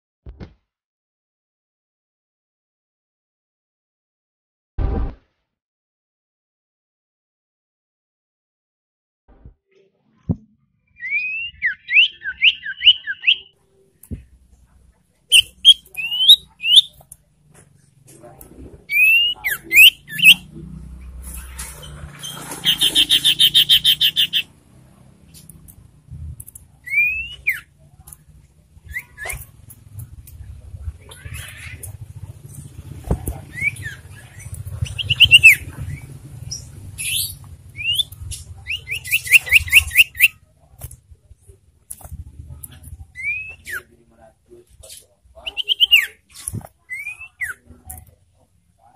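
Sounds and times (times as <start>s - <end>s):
bird whistling: 11.0s - 13.5s, 15.3s - 17.0s, 18.9s - 20.5s, 22.6s - 24.5s, 26.8s - 27.7s, 33.5s - 40.4s, 43.2s - 43.9s, 45.5s - 46.2s, 46.9s - 47.6s
bird chattering trill: 15.3s - 17.0s, 18.9s - 20.5s, 22.2s - 24.6s, 26.8s - 27.7s, 33.4s - 40.4s, 45.4s - 46.2s.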